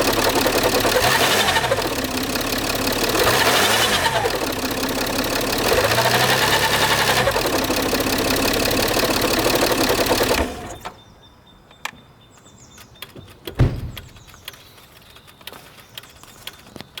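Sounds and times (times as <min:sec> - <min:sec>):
loud grinding noise: 0:00.0 - 0:10.9
diesel engine running: 0:00.0 - 0:11.0
low thump: 0:13.6 - 0:14.2.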